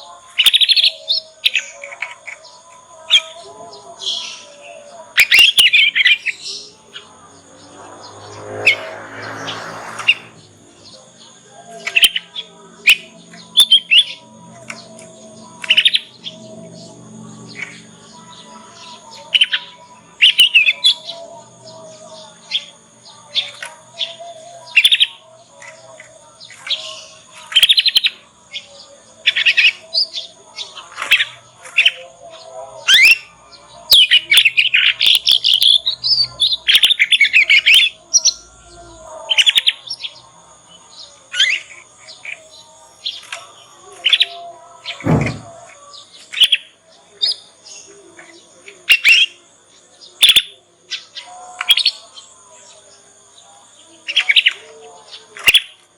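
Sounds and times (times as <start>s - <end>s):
bird swoop falling in pitch: 45.0s - 45.6s.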